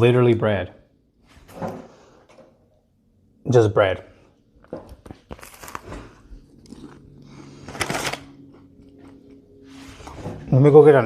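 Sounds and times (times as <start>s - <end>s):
faint steady hum: 0.0s - 11.0s
chewing and crunching: 4.5s - 10.2s.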